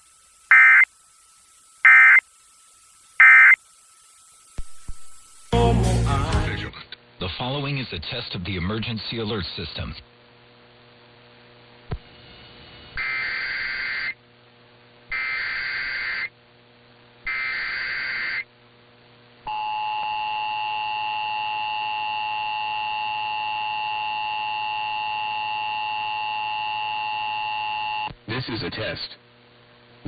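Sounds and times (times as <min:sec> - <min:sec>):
screeching digital data bursts: 0:00.0 - 0:05.6, 0:13.0 - 0:14.2, 0:15.1 - 0:16.3, 0:17.3 - 0:18.5
two-tone attention signal: 0:00.5 - 0:01.0, 0:01.8 - 0:02.3, 0:03.2 - 0:03.7.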